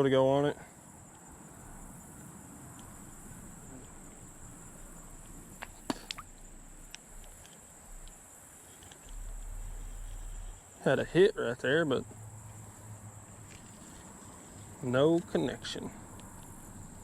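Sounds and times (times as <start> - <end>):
insect trilling: 0.7 - 17.0
sharp light clicks: 4.7 - 10.6.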